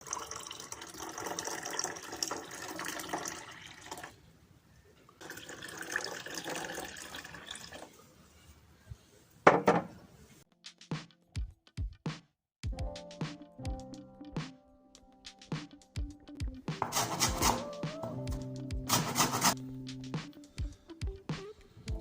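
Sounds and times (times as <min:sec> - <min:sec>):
water running from tap: 0:00.0 - 0:04.1, 0:05.2 - 0:07.8.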